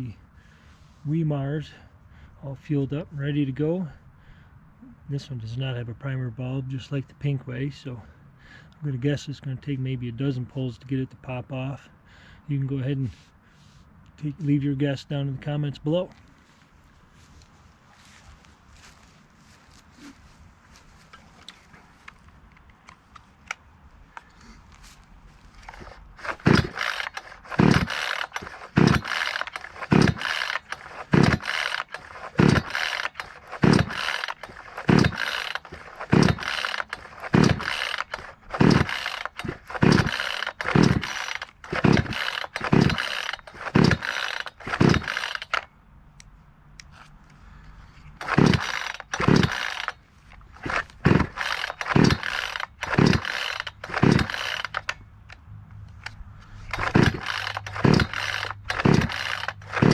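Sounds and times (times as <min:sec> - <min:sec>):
chainsaw starter rope pulls: 0:16.0 - 0:45.7, 0:46.9 - 0:59.9.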